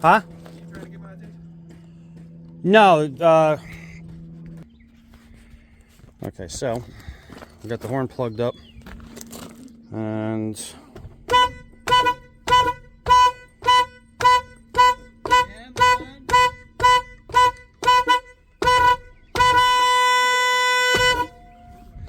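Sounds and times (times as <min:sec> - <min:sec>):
car horn toots: 0:11.0 - 0:22.0.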